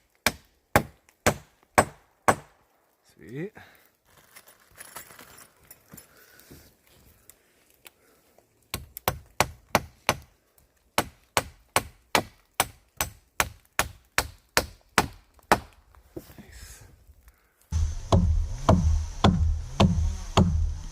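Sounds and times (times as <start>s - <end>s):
hammer driving nails into wood: 18.1s - 20.9s.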